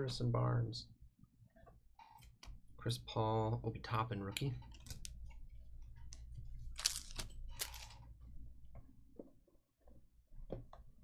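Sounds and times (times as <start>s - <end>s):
wrapper crinkly rustles: 6.6s - 8.0s.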